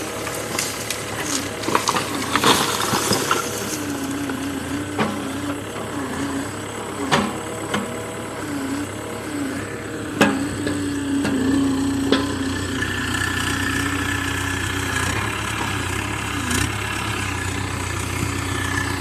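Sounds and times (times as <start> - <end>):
excavator diesel engine running: 0.0 - 19.0
metal clanks and knocks: 12.1 - 12.4.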